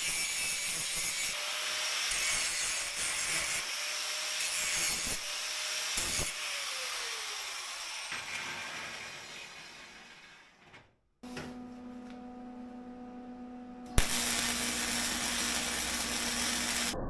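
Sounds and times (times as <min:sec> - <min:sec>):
power tool motor hum: 0:13.9 - 0:17.0
harsh hiss of grinding steel: 0:14.0 - 0:17.0.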